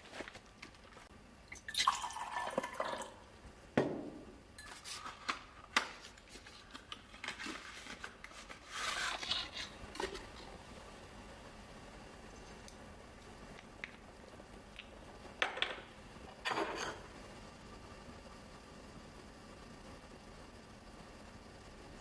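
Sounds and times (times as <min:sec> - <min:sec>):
liquid pouring: 0:01.5 - 0:03.3.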